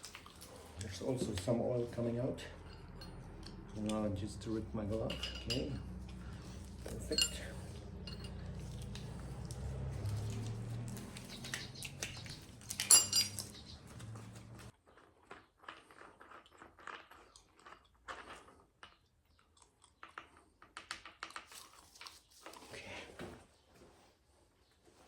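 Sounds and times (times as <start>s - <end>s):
metal tools clicking and tapping: 2.5s - 9.0s, 11.8s - 14.2s
ringing metal clink: 5.1s - 5.9s, 6.8s - 8.5s, 12.8s - 13.5s.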